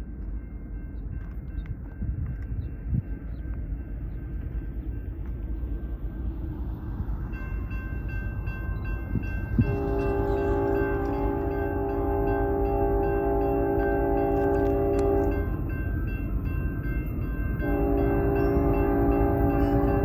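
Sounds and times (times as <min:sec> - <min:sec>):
freight train rumbling: 0:00.0 - 0:20.0
locomotive horn chord: 0:09.5 - 0:15.7, 0:17.6 - 0:20.0.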